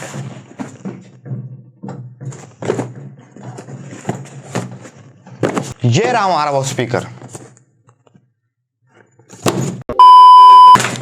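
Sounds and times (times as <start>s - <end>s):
objects knocking and thudding: 0.0s - 6.2s, 9.0s - 9.8s.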